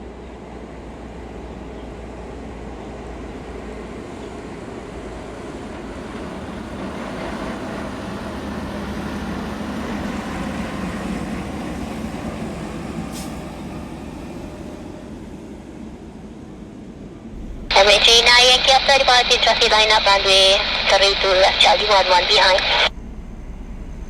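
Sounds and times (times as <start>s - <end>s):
jet engine roar: 17.4s - 22.9s.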